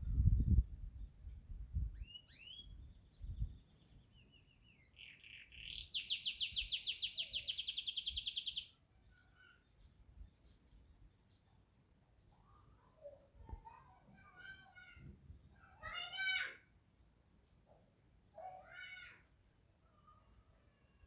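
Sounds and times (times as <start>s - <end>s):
canary singing with trill: 1.9s - 13.4s.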